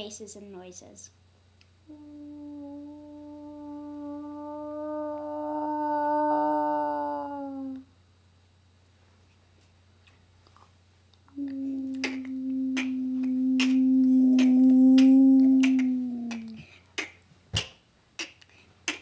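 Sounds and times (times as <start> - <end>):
long hummed or howled vocal tone: 1.8 - 8.8, 11.3 - 17.2.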